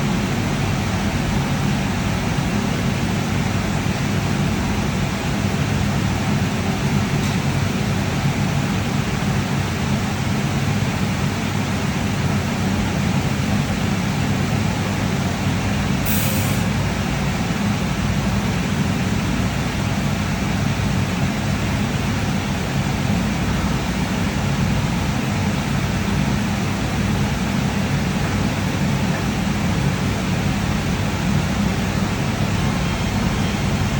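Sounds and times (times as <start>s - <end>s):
short hiss: 16.0s - 16.7s.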